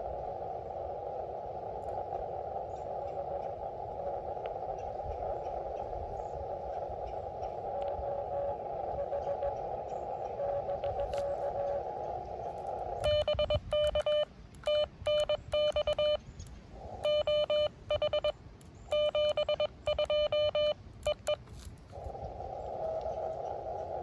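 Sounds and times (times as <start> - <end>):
radio band hiss: 0.0 - 24.0
morse code beeps: 13.0 - 16.2, 17.0 - 21.6.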